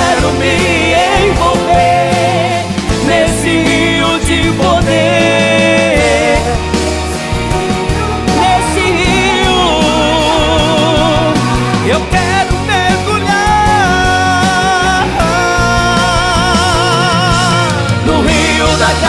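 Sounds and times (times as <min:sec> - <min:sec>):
bass line: 0:00.0 - 0:19.0
pop song with sung melody: 0:00.0 - 0:19.0.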